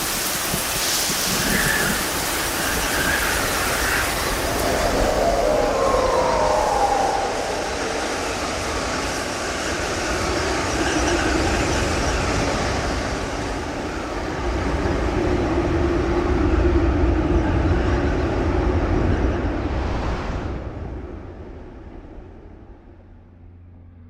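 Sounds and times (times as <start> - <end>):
large vehicle rumble and hiss: 0.0 - 10.8
faint hum: 4.2 - 9.6.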